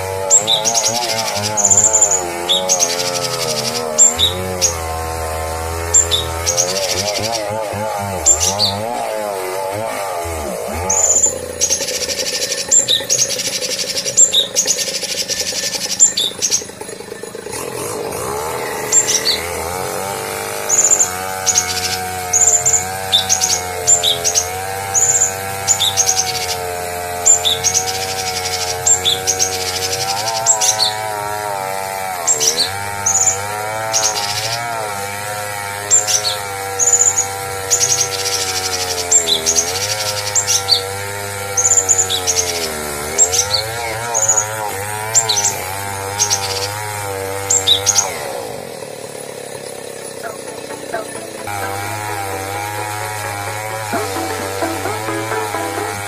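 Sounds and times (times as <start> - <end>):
high curved bird chirps: 0.3 - 4.9, 5.9 - 7.5, 10.9 - 17.1, 18.7 - 19.5.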